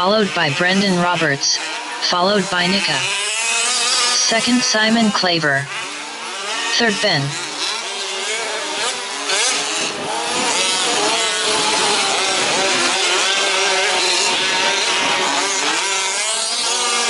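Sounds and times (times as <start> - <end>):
small engines revving: 0.0 - 17.0.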